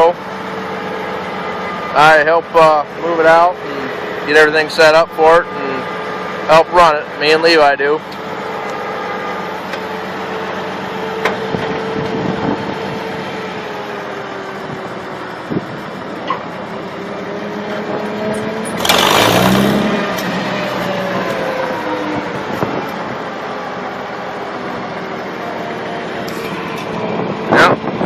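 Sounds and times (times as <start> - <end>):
tractor engine running: 0.0 - 28.0.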